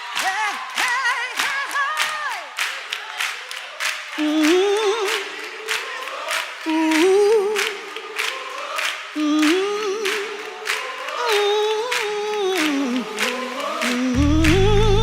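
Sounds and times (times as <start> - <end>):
voices singing: 4.2 - 15.0.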